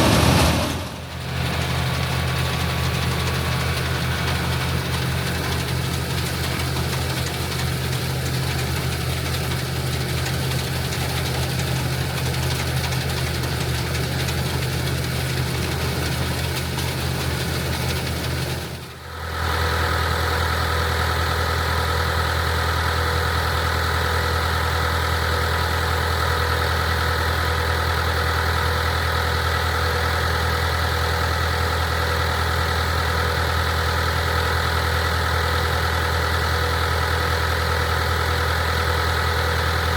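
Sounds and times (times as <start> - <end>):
combine machinery: 0.0 - 19.8
tractor engine running: 0.0 - 39.9.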